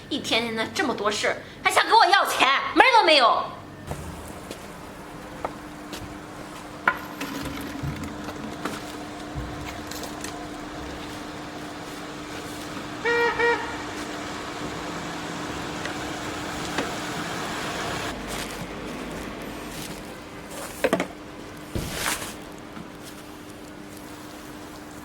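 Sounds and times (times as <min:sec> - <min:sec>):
steady low hum: 0:02.2 - 0:25.0
car horn beeping: 0:13.0 - 0:14.0.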